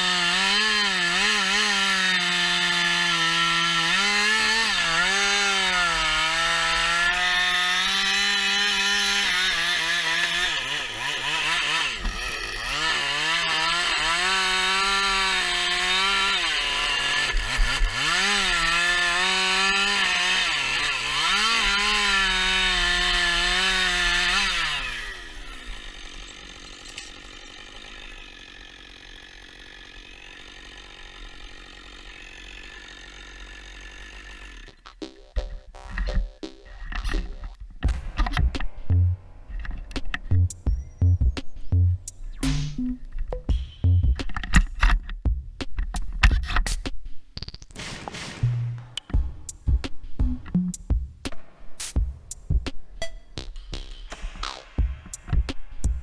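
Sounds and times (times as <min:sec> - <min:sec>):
chainsaw cutting wood: 0:00.0 - 0:35.2, 0:53.8 - 0:56.0.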